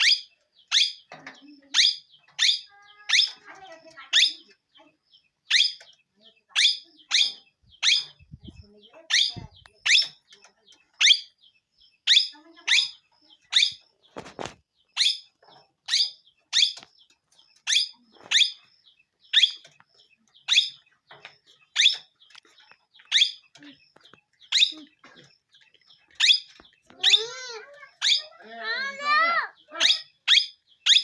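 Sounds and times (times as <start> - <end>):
parrot sharp calls: 26.2 - 31.0.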